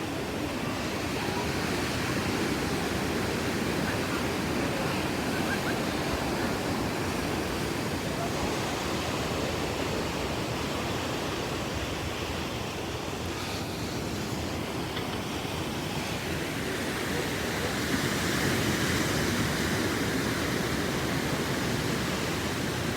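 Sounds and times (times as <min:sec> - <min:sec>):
ocean waves washing onto beach: 0:00.0 - 0:22.9.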